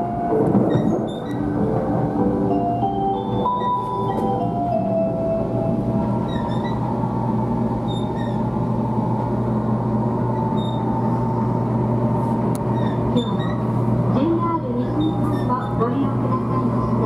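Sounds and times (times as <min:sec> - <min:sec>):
train humming and rumbling: 0:00.0 - 0:17.0
faint short squeaks: 0:06.3 - 0:06.9, 0:07.9 - 0:08.4, 0:10.5 - 0:10.9, 0:12.7 - 0:13.7, 0:14.9 - 0:15.8.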